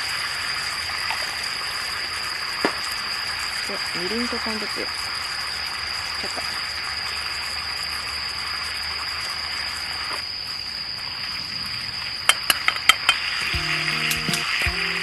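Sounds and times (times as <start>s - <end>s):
light background music: 13.5s - 15.0s.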